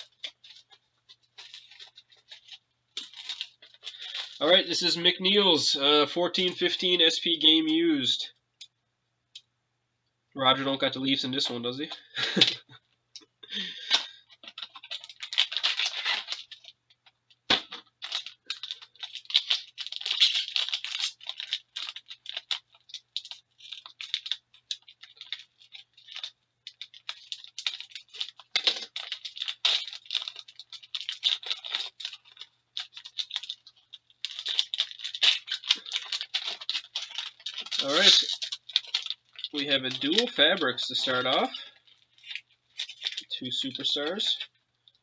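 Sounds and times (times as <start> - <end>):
foil packs being opened: 0.0 - 5.4, 10.9 - 12.7, 13.4 - 45.0
plastic wrap crinkling and tearing: 0.0 - 8.1, 10.6 - 45.0.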